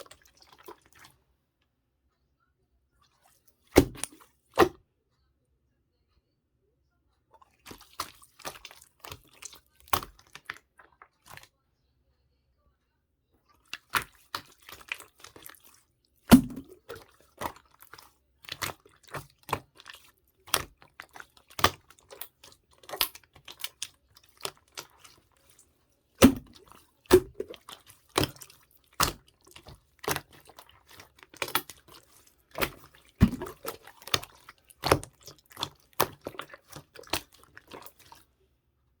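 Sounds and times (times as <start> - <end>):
slime squeezed with wet pops: 3.6 - 4.8, 7.5 - 10.7, 13.6 - 25.6, 26.2 - 38.2.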